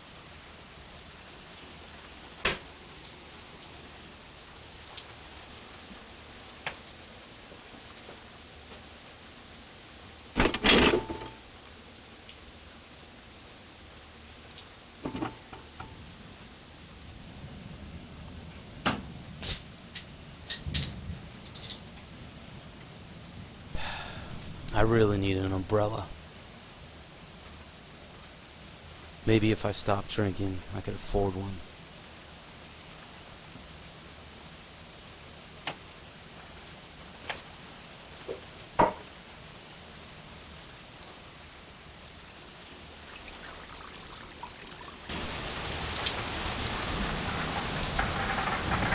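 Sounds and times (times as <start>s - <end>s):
steady rain falling: 0.0s - 48.9s
sharp knocks and clatters: 15.0s - 16.0s, 47.2s - 48.9s.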